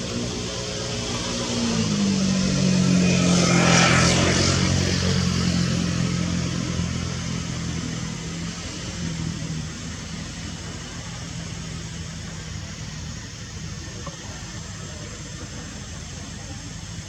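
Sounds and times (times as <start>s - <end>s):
vehicle passing rush: 0.0s - 12.0s
vehicle engine running: 0.0s - 17.0s.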